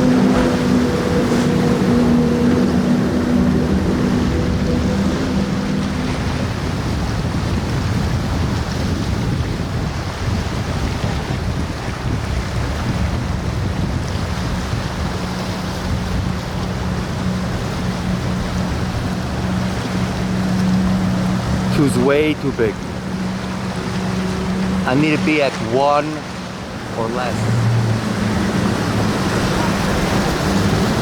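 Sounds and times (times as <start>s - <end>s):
wind noise on microphone: 0.0s - 21.7s
boat engine hum: 0.0s - 31.0s
water wash: 0.0s - 31.0s.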